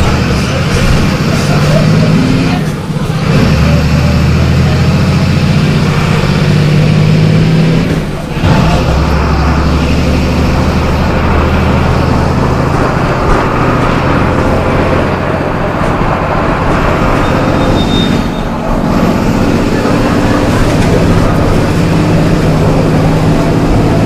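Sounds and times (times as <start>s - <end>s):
bus diesel engine running: 0.0s - 24.0s.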